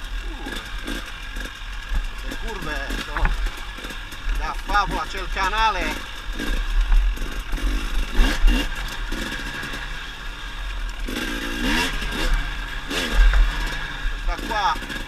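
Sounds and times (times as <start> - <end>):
two-stroke engine revving: 0.0 - 15.0.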